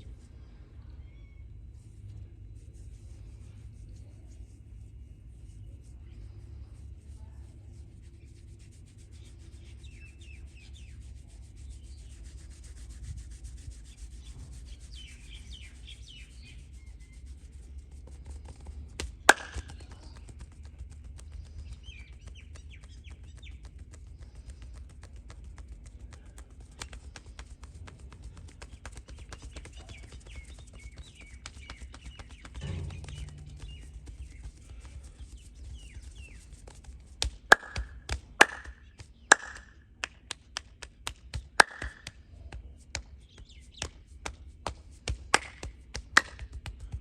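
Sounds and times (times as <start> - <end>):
low steady rumble: 0.0 - 43.3
birds chirping: 0.4 - 1.6, 14.2 - 17.3, 19.0 - 39.7
hands rubbing skin: 1.8 - 47.0.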